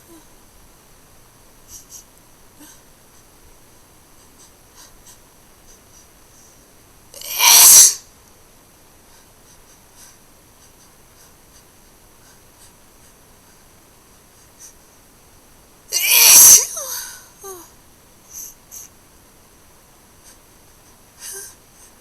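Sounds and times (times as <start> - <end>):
person sneezing: 7.2 - 8.0, 15.9 - 17.6.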